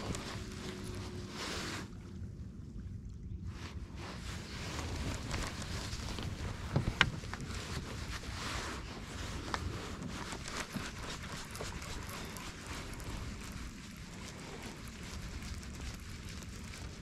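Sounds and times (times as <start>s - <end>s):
wind buffeting microphone: 0.0s - 1.3s, 3.2s - 11.0s.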